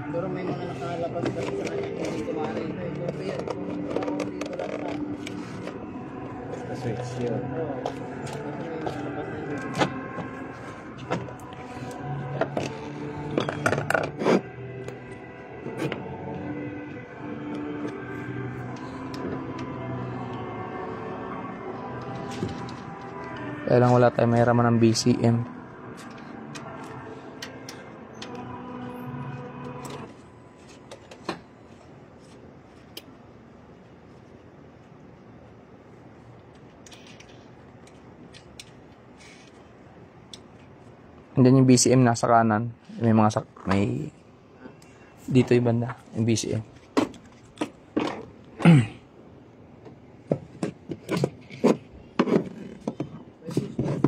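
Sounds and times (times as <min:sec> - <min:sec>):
room noise: 0:00.0 - 0:54.0
tools handling car parts: 0:06.5 - 0:16.1, 0:49.9 - 0:54.0.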